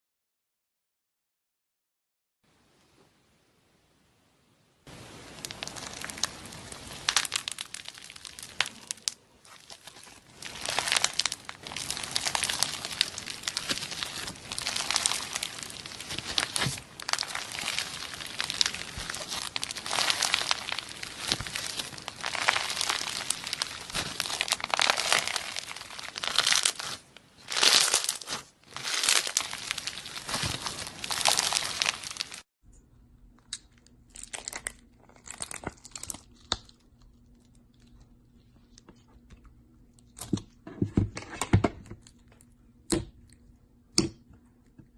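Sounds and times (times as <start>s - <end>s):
slime squeezed crackling: 5.2s - 32.4s.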